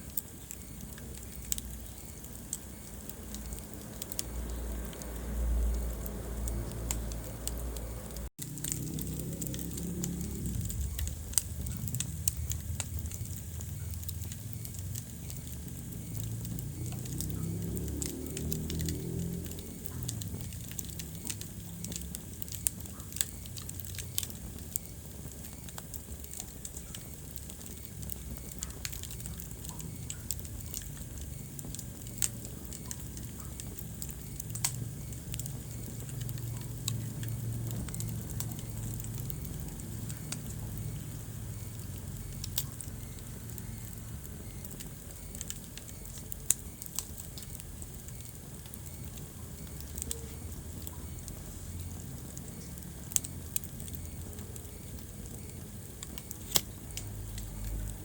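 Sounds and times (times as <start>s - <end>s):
fire crackling and popping: 0.0s - 58.0s
low rumble of flames: 0.0s - 58.0s.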